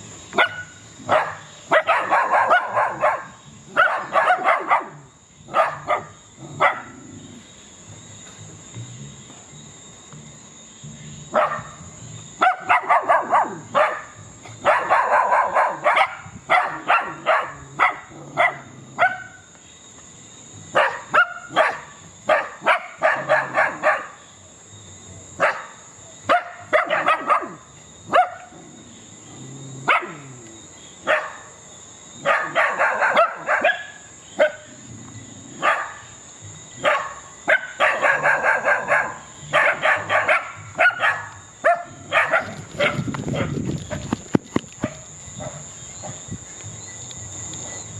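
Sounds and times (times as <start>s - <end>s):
dogs barking: 0.3s - 7.3s, 11.3s - 19.4s, 20.7s - 24.2s, 25.4s - 28.6s, 29.8s - 30.4s, 31.0s - 31.6s, 32.2s - 34.9s, 35.5s - 36.2s, 36.8s - 44.2s, 44.8s - 46.2s.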